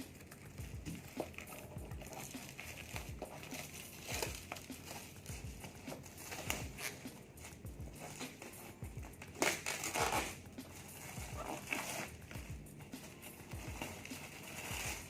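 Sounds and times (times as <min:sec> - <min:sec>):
plastic packaging crinkling: 0:00.0 - 0:07.0.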